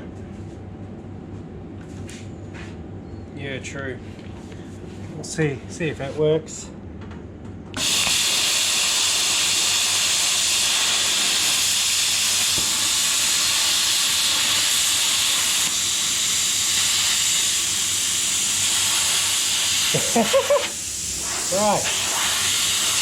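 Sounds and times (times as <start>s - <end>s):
plasma cutter arc hissing: 7.8s - 23.0s.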